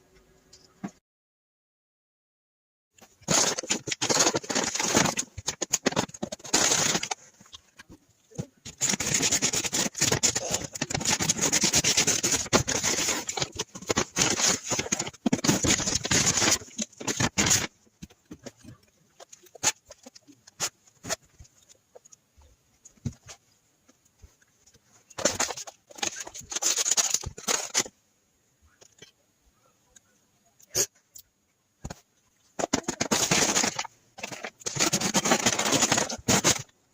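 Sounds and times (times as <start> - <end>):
plastic packaging crinkling: 3.2 - 21.7, 25.1 - 27.9, 32.6 - 36.7.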